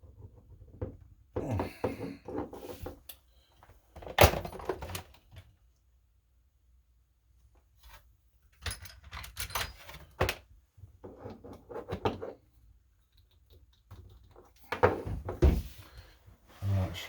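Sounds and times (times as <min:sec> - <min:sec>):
metal tools clinking and rattling: 0:08.6 - 0:10.2.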